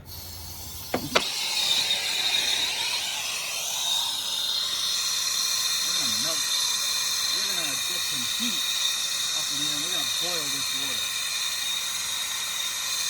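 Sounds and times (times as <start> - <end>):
torch flame hissing: 0.0 - 13.0
torch igniter clicks: 0.1 - 8.0.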